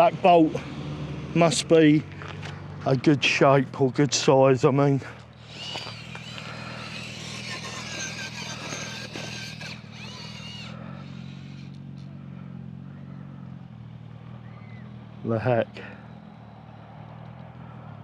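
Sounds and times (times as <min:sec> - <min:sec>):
grinding and scraping on rocks: 0:05.0 - 0:11.8
electric motor whining: 0:05.2 - 0:12.1.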